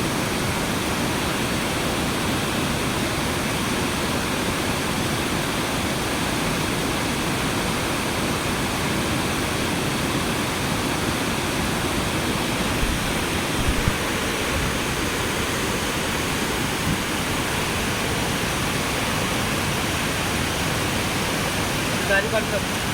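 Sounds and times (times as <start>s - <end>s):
water rushing: 0.0s - 22.9s.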